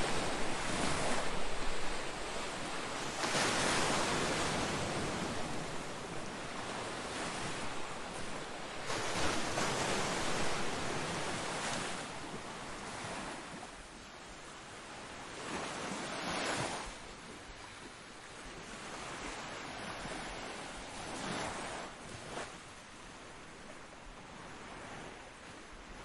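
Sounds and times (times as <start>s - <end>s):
ocean waves breaking: 0.0s - 13.8s.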